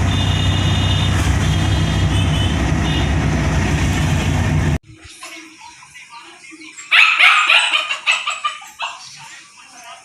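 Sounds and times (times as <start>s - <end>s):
loud engine-like hum: 0.0s - 4.8s.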